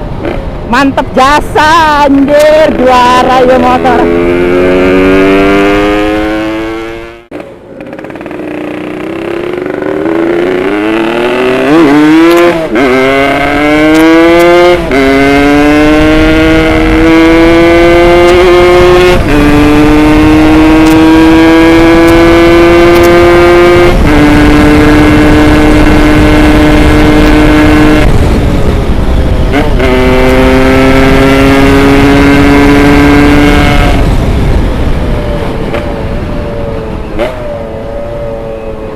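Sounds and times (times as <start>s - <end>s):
motorcycle engine accelerating: 2.3s - 38.9s.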